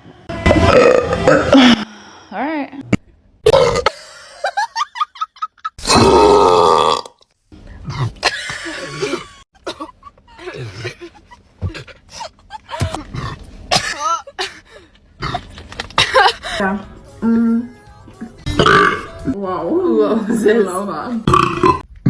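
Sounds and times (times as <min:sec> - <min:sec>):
girls burping: 0:07.9 - 0:14.5, 0:15.2 - 0:15.5, 0:18.5 - 0:19.0.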